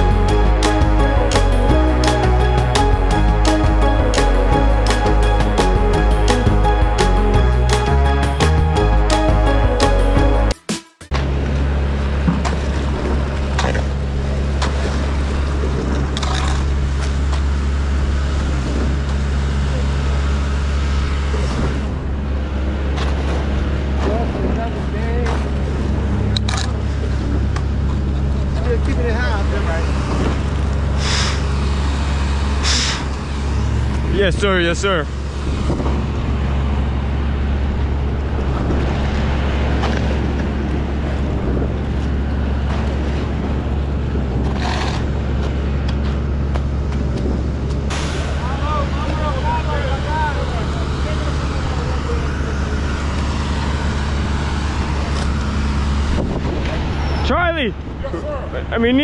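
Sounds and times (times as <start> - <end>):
large engine running steadily: 12.0 - 57.1.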